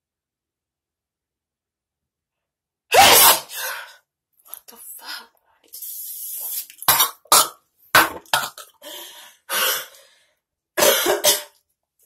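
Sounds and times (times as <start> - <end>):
person sneezing: 2.9 - 3.9
person coughing: 10.8 - 11.6.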